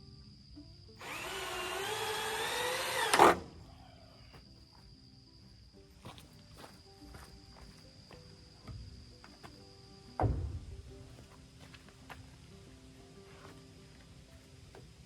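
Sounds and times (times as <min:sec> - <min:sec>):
faint background music: 0:00.0 - 0:15.0
power drill driving a screw: 0:01.0 - 0:03.5.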